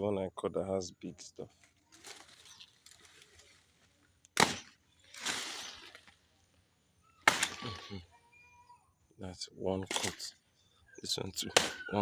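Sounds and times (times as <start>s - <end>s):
rustle: 1.5s - 6.6s
blade chopping plant stalk: 4.4s - 5.6s.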